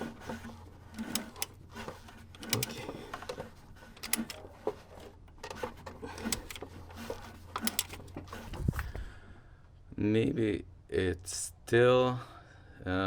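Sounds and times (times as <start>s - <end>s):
metallic clicks and knocks: 0.9s - 8.4s.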